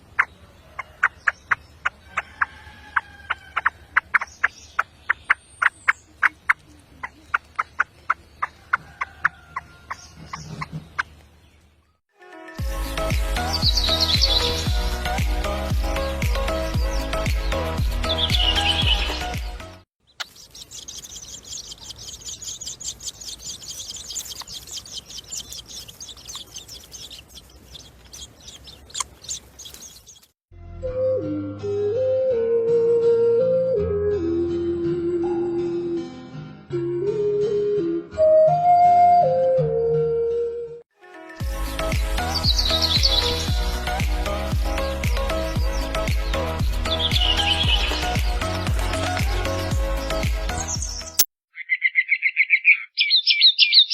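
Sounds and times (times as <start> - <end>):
birds chirping: 0.0 - 12.0, 12.6 - 30.4, 41.6 - 53.9.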